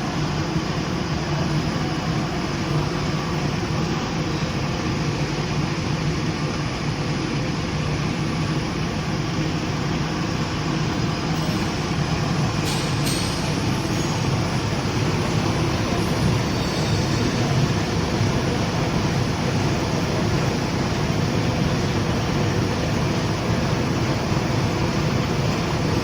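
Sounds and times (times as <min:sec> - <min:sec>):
welding machine drone: 0:08.2 - 0:26.0.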